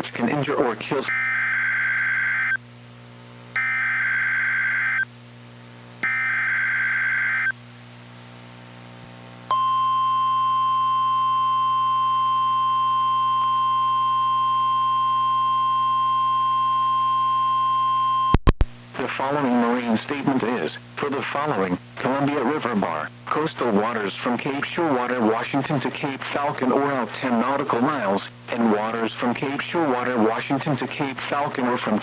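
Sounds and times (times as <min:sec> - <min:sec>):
steady alarm tone: 0:03.6 - 0:05.1, 0:06.0 - 0:07.5, 0:09.5 - 0:18.3.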